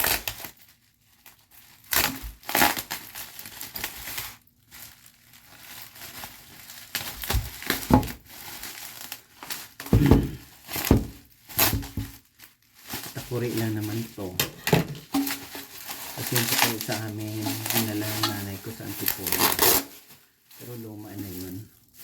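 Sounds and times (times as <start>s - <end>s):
cardboard crumpling and tearing: 0.0s - 22.0s
dull thump: 7.3s - 8.2s, 9.9s - 12.2s.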